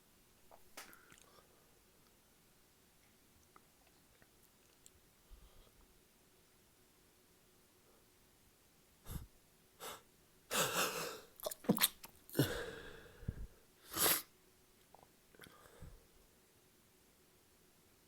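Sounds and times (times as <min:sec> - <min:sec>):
person sneezing: 0:13.9 - 0:14.3.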